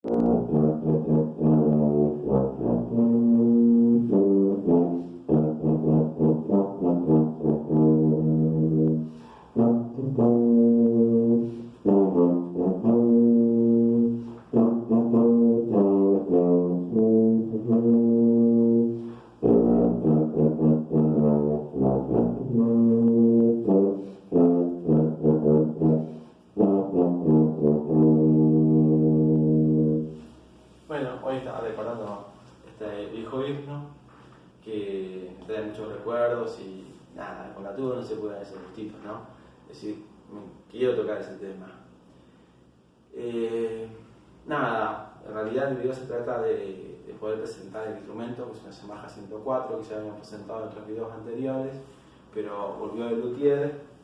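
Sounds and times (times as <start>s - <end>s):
tuba playing a slow hymn: 0.0s - 30.4s.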